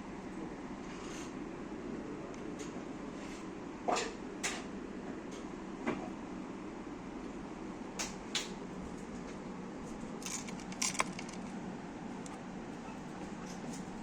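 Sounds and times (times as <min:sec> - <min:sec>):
steady low hum: 0:00.0 - 0:14.0
small hard parts clicking: 0:10.2 - 0:11.5.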